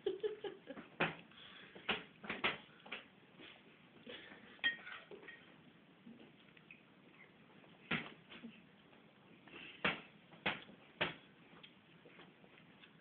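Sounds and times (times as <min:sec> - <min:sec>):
utensil clinking on a dish: 0:04.6 - 0:05.5.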